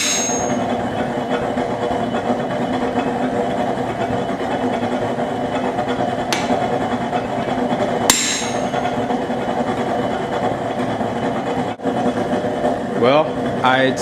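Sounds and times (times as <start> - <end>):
hammer striking steel anvil: 0.0 - 0.7, 8.1 - 8.8
gas forge roaring: 0.0 - 14.0.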